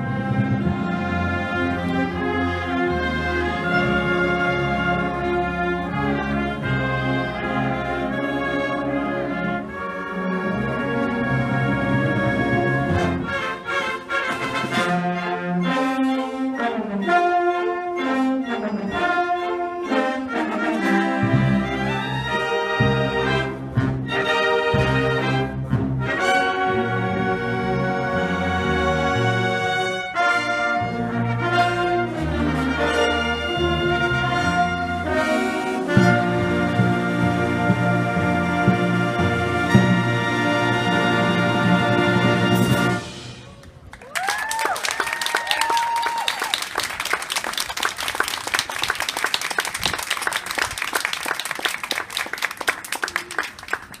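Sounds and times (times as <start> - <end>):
brass section playing held chords: 0.0 - 43.4
high cheer: 43.5 - 54.0
audience applauding: 43.6 - 54.0.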